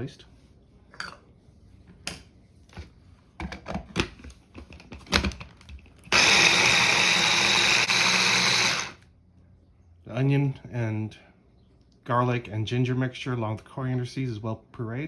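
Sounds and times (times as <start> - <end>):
blender motor running: 6.1 - 9.0.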